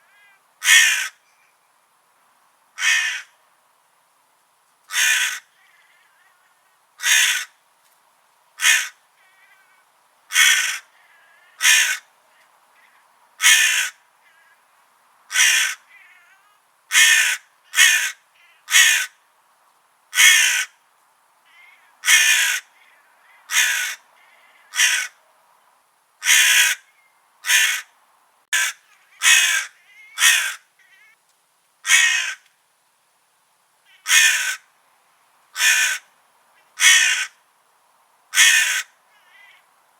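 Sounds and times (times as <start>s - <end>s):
crow cawing: 0.0s - 1.2s, 2.8s - 3.4s, 4.9s - 6.3s, 7.0s - 7.6s, 8.6s - 12.1s, 12.8s - 14.6s, 15.3s - 19.2s, 20.1s - 20.8s, 21.5s - 25.2s, 26.2s - 27.9s, 28.5s - 31.2s, 31.8s - 32.5s, 33.9s - 34.7s, 35.6s - 36.1s, 36.8s - 37.4s, 38.3s - 39.6s.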